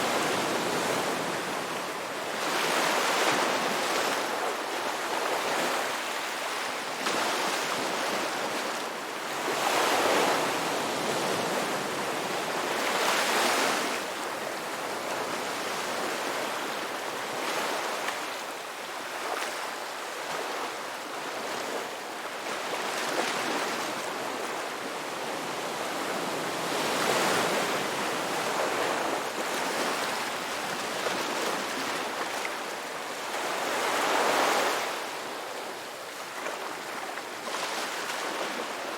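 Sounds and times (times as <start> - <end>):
ocean waves washing onto shore: 0.0 - 38.9.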